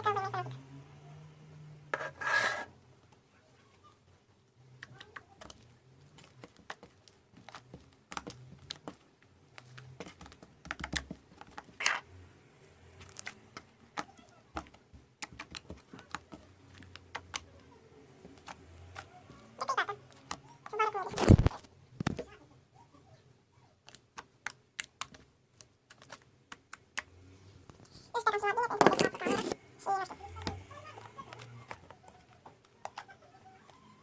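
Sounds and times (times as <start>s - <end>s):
slime clicking and popping: 23.8s - 27.1s.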